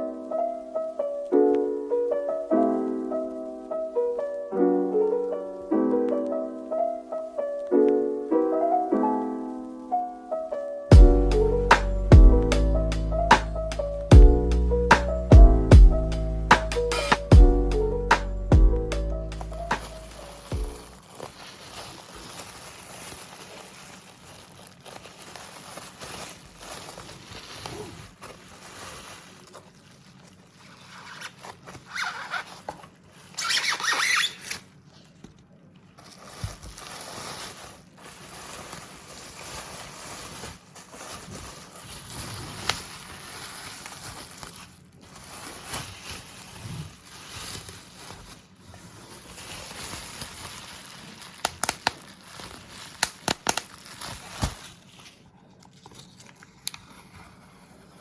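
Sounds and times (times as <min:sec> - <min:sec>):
packaging rustling and crinkling: 0:19.2 - 0:58.0.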